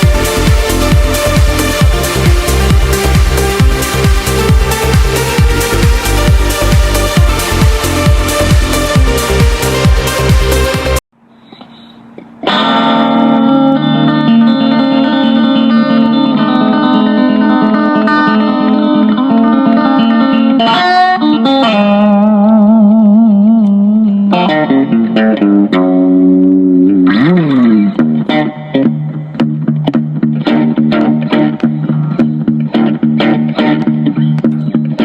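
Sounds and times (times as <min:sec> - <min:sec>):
guitar playing long held notes: 0:00.0 - 0:11.0, 0:12.3 - 0:35.0.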